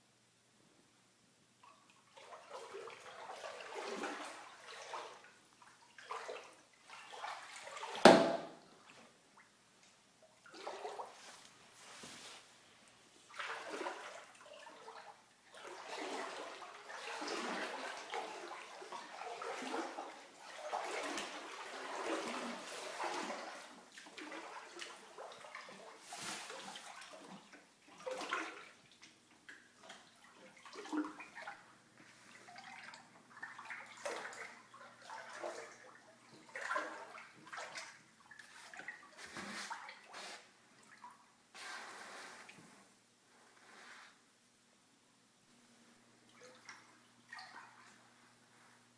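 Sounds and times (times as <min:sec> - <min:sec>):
water splashing and sloshing: 0:01.6 - 0:44.2, 0:45.8 - 0:48.9.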